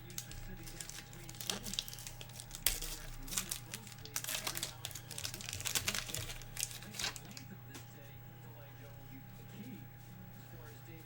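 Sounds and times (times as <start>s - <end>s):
foil wrapper crinkling: 0.0s - 7.5s
cards handled and flipped: 0.0s - 7.9s.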